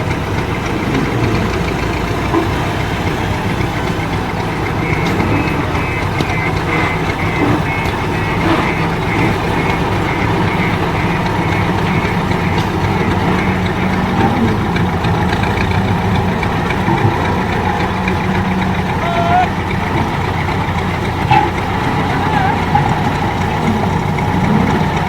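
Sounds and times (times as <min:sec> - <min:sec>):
heavy diesel engine running: 0:00.0 - 0:25.0
high electronic beeps: 0:04.4 - 0:14.8.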